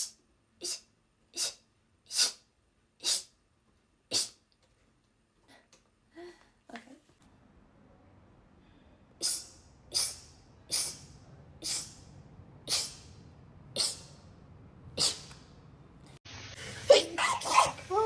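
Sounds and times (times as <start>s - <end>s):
short hissing sneezes: 0.0s - 3.4s, 4.1s - 4.4s, 9.2s - 12.0s, 12.7s - 13.1s, 13.8s - 14.1s, 15.0s - 15.4s.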